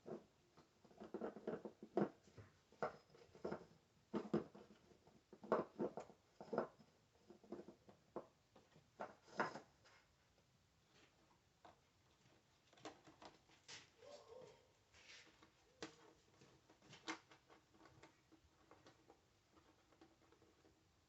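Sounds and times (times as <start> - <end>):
tools knocking and clattering on plastic: 0.0 - 10.0.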